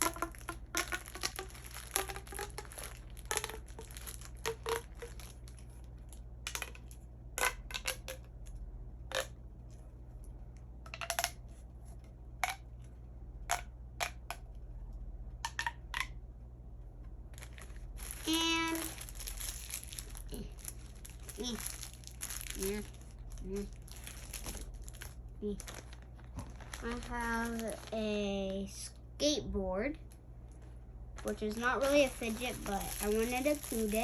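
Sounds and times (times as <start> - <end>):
plastic pop tube popping: 0.0 - 5.4, 6.4 - 8.5, 9.1 - 9.4, 10.8 - 11.4, 12.4 - 12.7, 13.5 - 14.6, 15.4 - 16.2.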